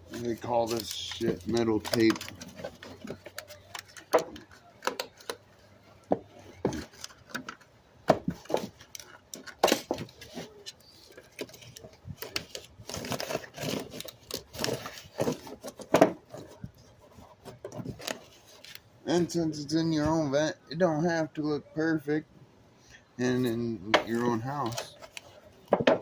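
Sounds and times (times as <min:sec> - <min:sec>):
foil tape crinkling: 0:00.0 - 0:05.3, 0:08.4 - 0:16.8.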